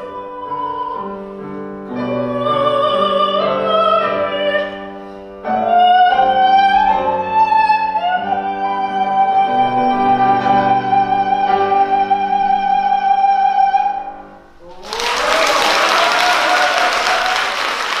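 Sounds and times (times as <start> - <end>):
piano chords: 0.0 - 18.0
audience applause: 14.6 - 18.0.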